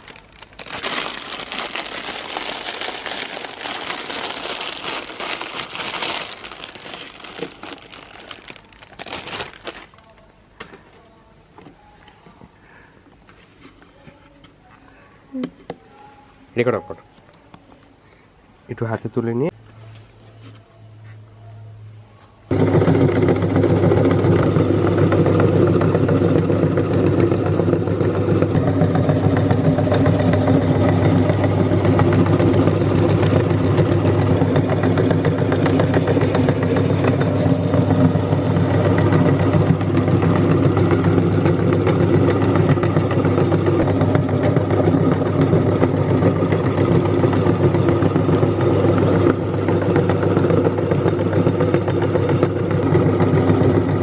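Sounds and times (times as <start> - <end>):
meat grinder motor humming: 0.0 - 9.2, 22.5 - 54.0.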